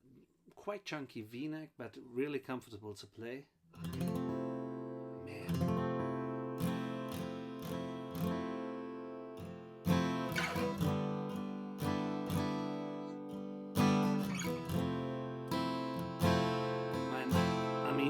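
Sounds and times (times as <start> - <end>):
acoustic guitar strumming: 3.8 - 18.0.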